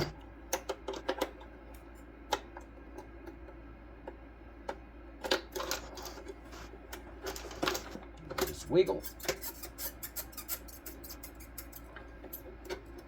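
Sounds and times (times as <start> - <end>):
plastic parts clicking and knocking: 0.0 - 1.5.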